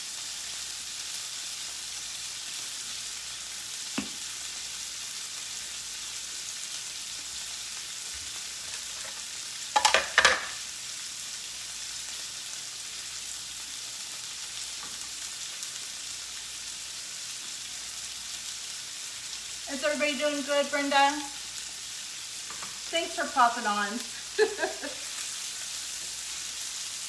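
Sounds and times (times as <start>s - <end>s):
meat sizzling in a pan: 0.0s - 27.0s
utensil clattering on a pan: 9.8s - 10.6s.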